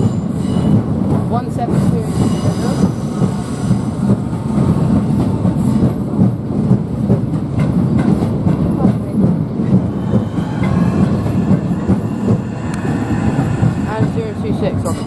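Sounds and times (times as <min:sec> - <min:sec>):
train traction motors: 0:00.0 - 0:15.0.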